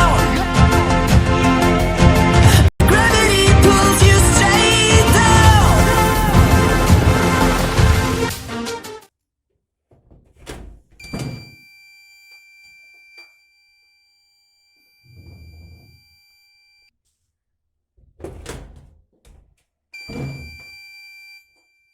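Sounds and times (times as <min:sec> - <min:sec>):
door thumps: 0:09.9 - 0:11.6, 0:18.0 - 0:20.8
door alarm buzzer tone: 0:11.0 - 0:16.9, 0:20.0 - 0:21.9.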